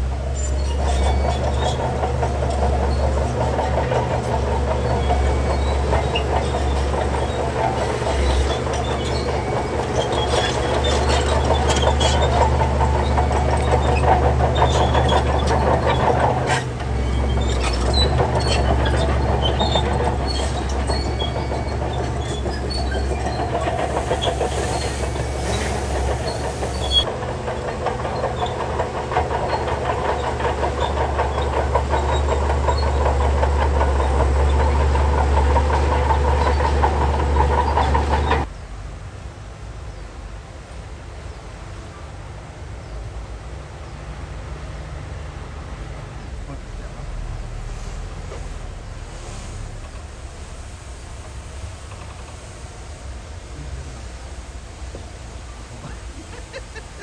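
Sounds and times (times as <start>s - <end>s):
bulldozer diesel engine: 0.0s - 38.5s, 40.8s - 57.0s
clattering tracks: 0.0s - 38.5s, 54.6s - 57.0s.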